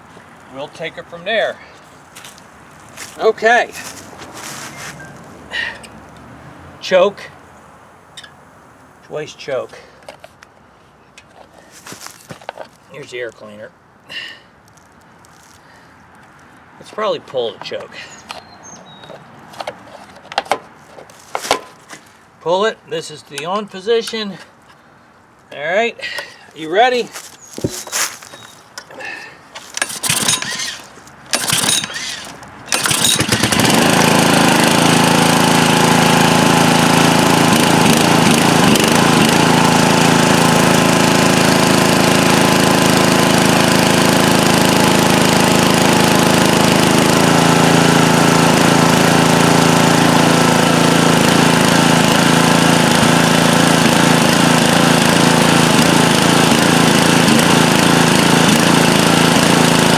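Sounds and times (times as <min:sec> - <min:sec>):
small engine running: 0:02.1 - 0:06.8, 0:27.6 - 0:59.9
recoil starter pulls: 0:26.1 - 0:59.9.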